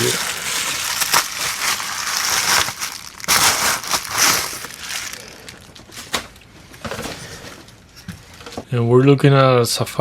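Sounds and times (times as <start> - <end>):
plastic packaging crinkling: 0.0 - 6.4.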